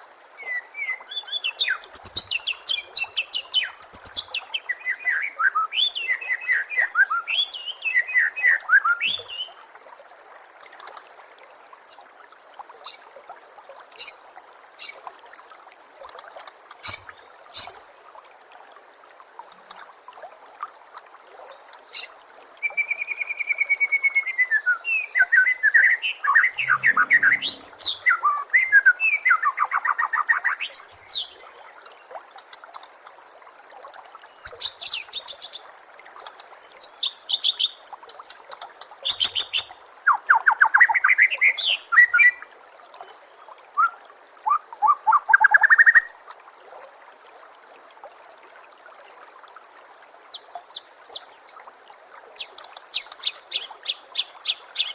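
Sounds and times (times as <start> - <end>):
trickle of running water: 0.0 - 54.9
bird singing whistled phrases: 0.4 - 9.5, 22.6 - 29.6.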